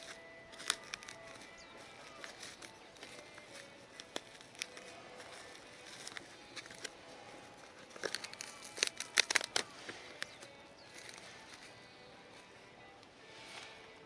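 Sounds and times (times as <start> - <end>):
crinkling handling noises: 0.0 - 14.0
sharp clicks: 7.8 - 11.6.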